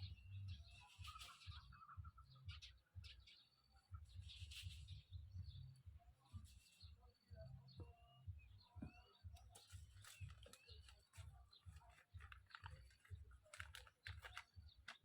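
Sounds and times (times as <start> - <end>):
faint bird chirps: 0.0 - 13.2
light clicks and rustles: 9.3 - 15.0.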